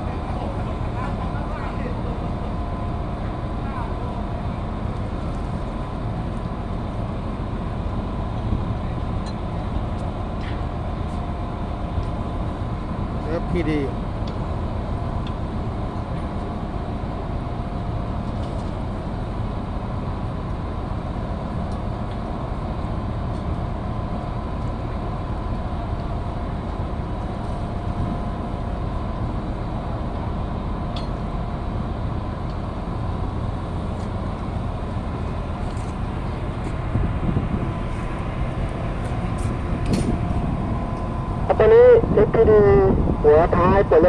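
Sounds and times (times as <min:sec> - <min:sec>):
machinery drone: 0:22.5 - 0:44.0.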